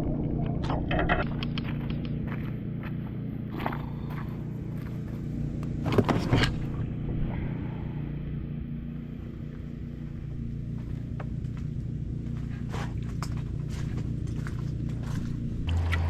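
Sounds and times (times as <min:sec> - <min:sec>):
steady low rumble: 0:00.0 - 0:16.0.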